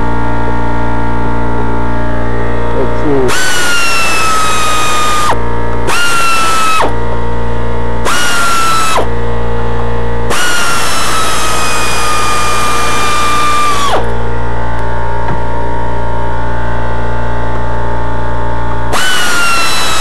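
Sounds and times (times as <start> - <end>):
steady low hum: 0.0 - 20.0
power drill whine: 3.2 - 7.1, 8.0 - 9.2, 10.2 - 14.2, 18.8 - 20.0.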